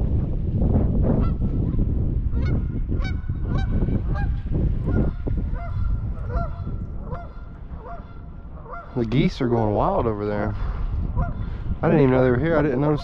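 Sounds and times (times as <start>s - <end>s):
wind rumble on microphone: 0.0s - 13.0s
geese honking: 2.4s - 9.3s, 11.2s - 11.5s.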